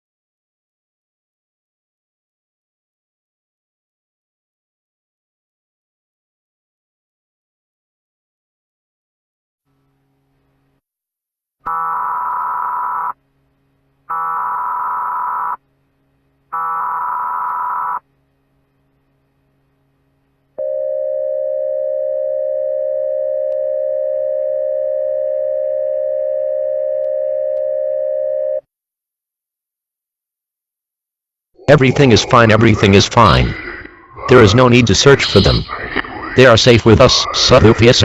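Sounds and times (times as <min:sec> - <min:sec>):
buzzing data header tones: 0:31.6 - 0:38.0
steady electronic attention tone: 0:31.6 - 0:38.0.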